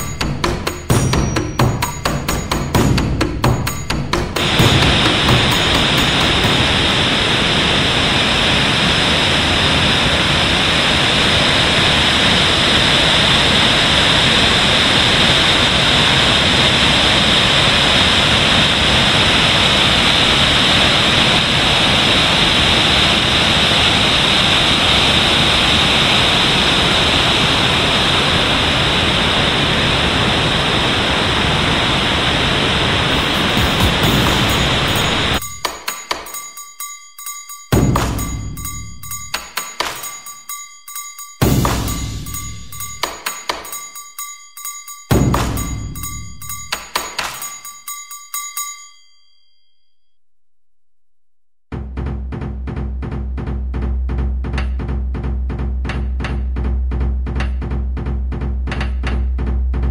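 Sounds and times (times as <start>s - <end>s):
waterfall rushing: 4.4s - 35.4s.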